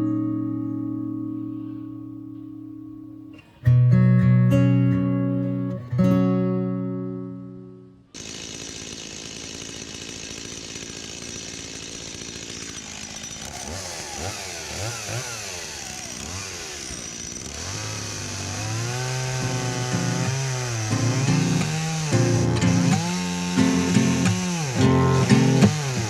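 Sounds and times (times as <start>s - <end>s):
chainsaw cutting log: 8.2s - 26.0s.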